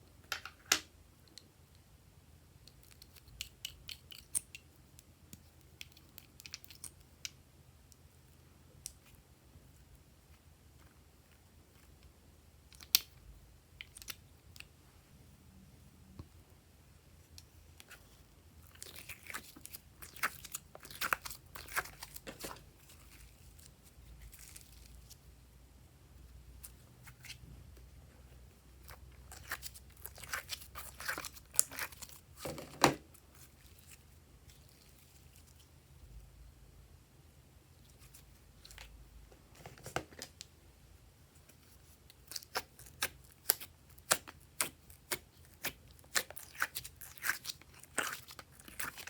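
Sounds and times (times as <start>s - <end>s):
slime crackling: 28.8s - 32.2s.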